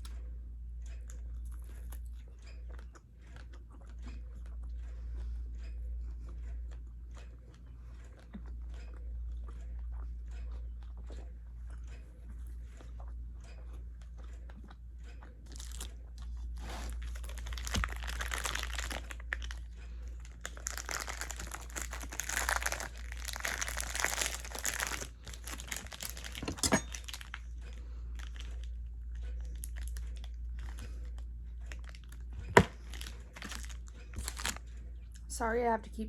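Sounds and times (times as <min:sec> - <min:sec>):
wrapping crinkling and rustling: 0:15.5 - 0:35.2.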